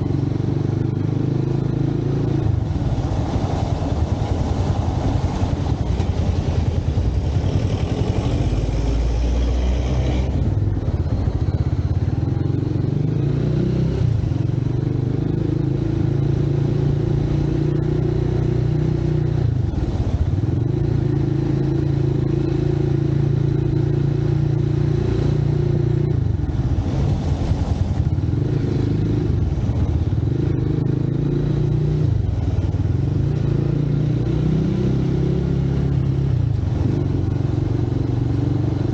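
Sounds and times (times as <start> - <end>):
motorcycle engine running: 0.0 - 38.9
road and wind noise: 0.0 - 38.9.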